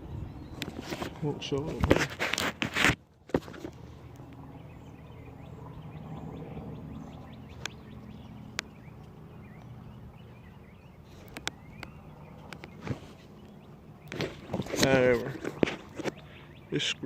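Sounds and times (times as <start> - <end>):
low outdoor rumble: 0.0 - 2.0, 3.0 - 17.0
faint bird chirps: 3.9 - 14.8, 15.8 - 17.0.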